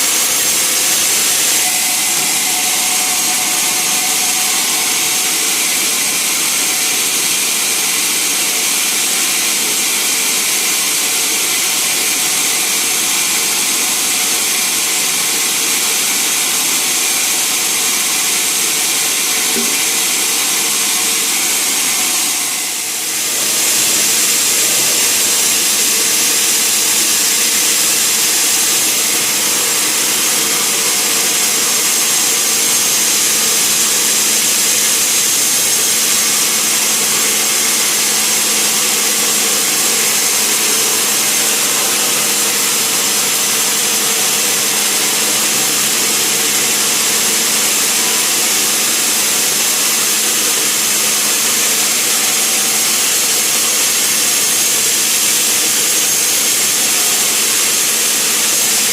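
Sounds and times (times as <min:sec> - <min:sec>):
high-pitched hiss: 0:00.0 - 0:07.4, 0:19.4 - 0:43.7
machine hum: 0:00.0 - 0:08.4, 0:19.2 - 0:48.4
saw cutting timber: 0:00.0 - 0:58.9.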